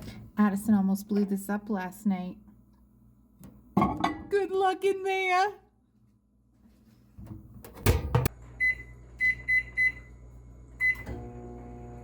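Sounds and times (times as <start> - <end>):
microwave oven humming: 7.2 - 12.0.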